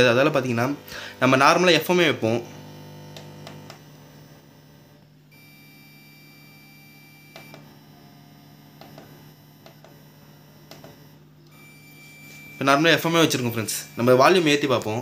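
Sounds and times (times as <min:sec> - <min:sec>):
low mains hum: 0:00.0 - 0:15.0.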